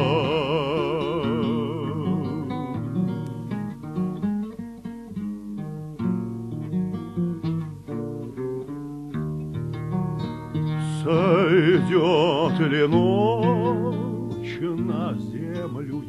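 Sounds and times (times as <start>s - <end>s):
person singing with vibrato: 0.0s - 2.9s, 10.8s - 16.0s
acoustic guitar plucked: 0.0s - 16.0s.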